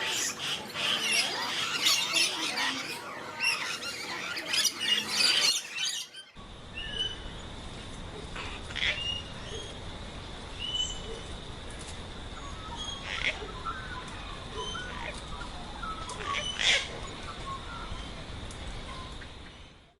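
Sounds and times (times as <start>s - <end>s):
harsh parrot calls: 0.0s - 7.2s, 12.8s - 13.6s, 16.2s - 16.9s
birds chirping: 0.0s - 7.6s, 12.2s - 19.8s.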